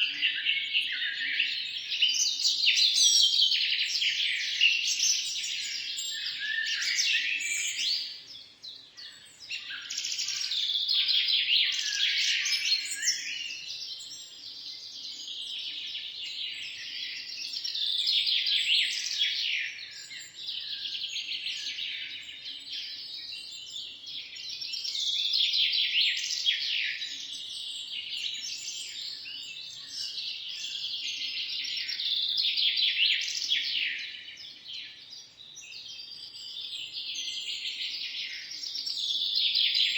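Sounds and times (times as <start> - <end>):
birds chirping and trilling: 0.0 - 39.9.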